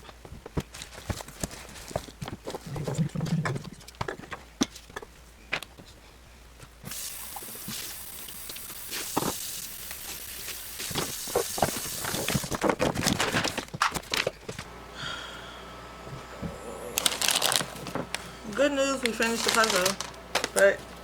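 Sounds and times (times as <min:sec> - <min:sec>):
steady hiss: 0:06.8 - 0:12.5.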